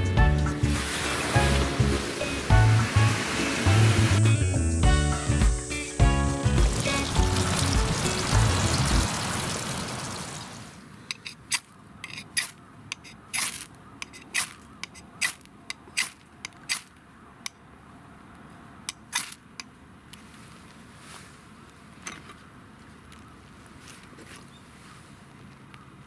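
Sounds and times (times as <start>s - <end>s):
background music: 0.0s - 9.4s.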